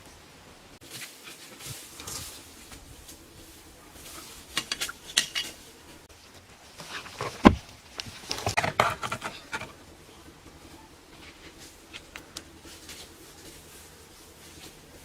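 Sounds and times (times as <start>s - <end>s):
hard objects clicking and clattering: 7.0s - 9.8s.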